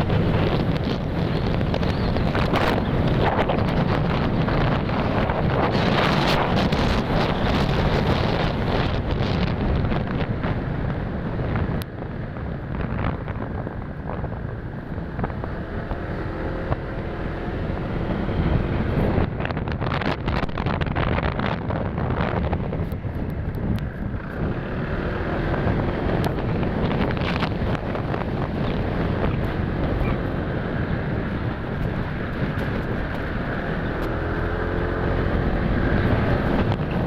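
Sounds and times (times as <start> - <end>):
motorcycle engine: 0.0 - 37.0
wind rushing over microphone: 0.0 - 37.0.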